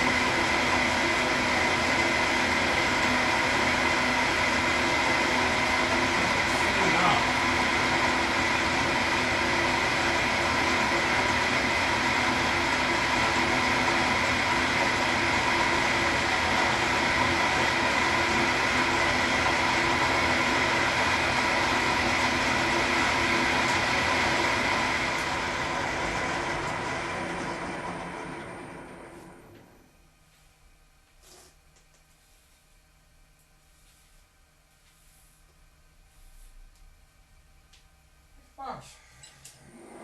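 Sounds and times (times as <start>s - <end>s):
milling machine humming and whining: 0.0s - 29.9s.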